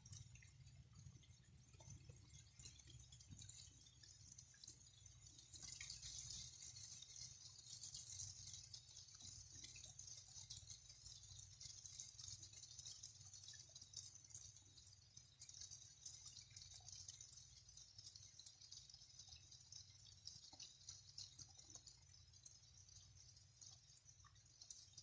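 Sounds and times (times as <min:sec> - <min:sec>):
light rain pattering: 0:00.0 - 0:25.0.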